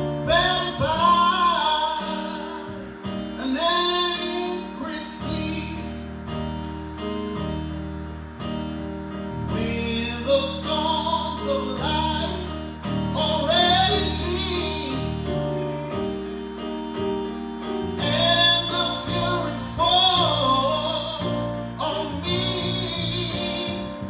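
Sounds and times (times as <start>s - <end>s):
sustained instrumental chords: 0.0s - 24.0s.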